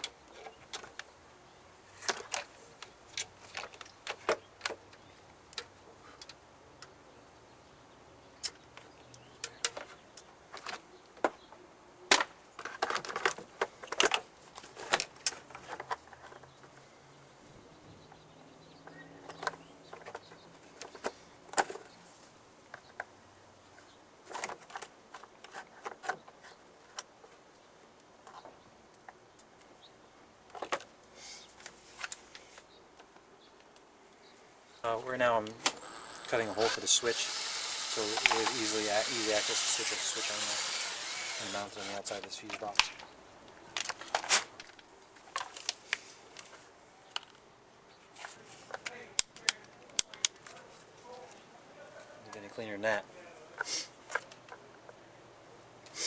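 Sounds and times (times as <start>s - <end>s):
clicks of small parts and tools: 38.2s - 38.6s.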